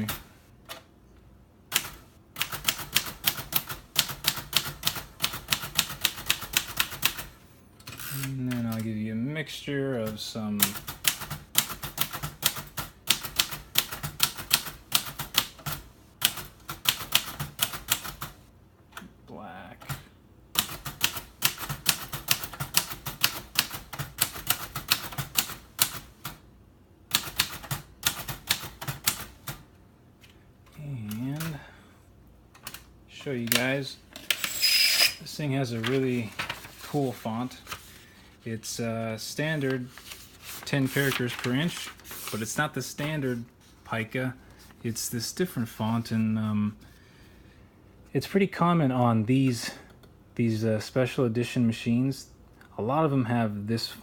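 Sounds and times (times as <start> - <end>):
typewriter keys striking: 10.6 - 18.4, 20.6 - 26.4, 27.1 - 29.6.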